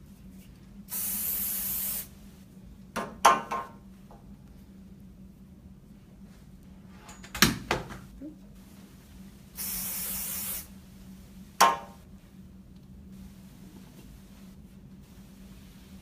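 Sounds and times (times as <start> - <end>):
aerosol hairspray burst: 0.9 - 2.1, 9.6 - 10.7.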